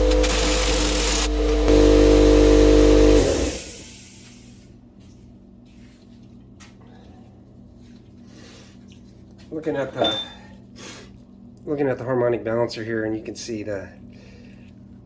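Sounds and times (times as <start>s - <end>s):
machine motor humming: 0.0s - 4.0s.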